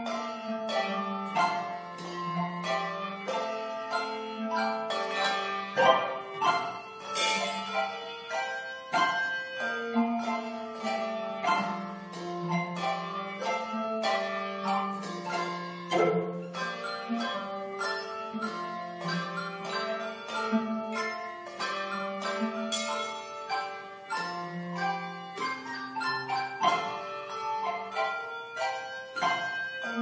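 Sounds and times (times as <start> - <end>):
handbell choir playing: 0.0 - 30.0.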